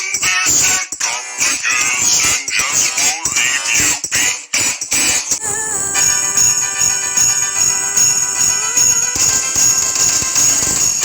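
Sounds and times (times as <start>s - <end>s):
high processed singing voice: 0.0s - 6.8s.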